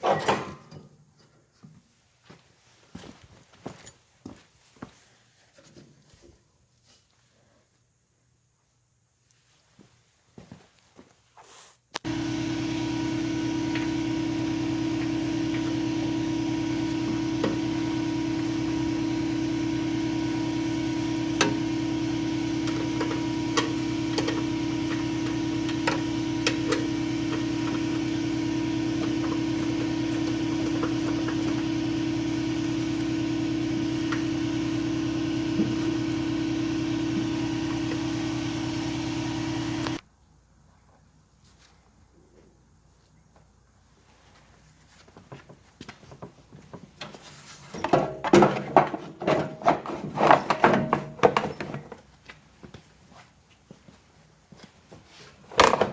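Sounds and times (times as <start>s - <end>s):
steady machine hum: 12.0s - 40.0s.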